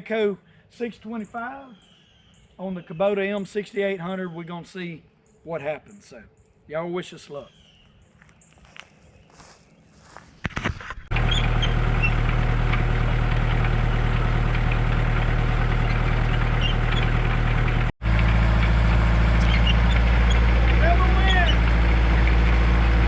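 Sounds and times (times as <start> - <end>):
tractor diesel engine running: 11.1 - 23.0.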